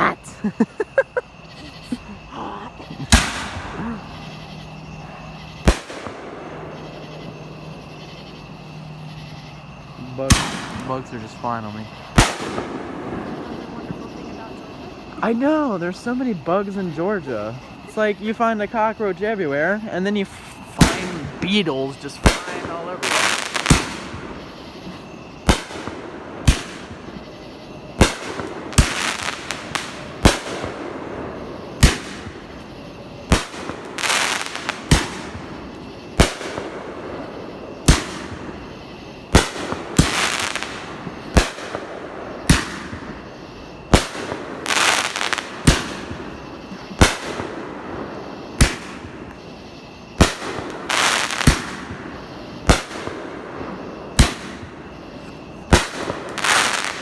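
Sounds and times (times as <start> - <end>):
fireworks hissing bursts: 0.0 - 57.0
fireworks bangs: 1.0 - 8.7, 9.3 - 57.0.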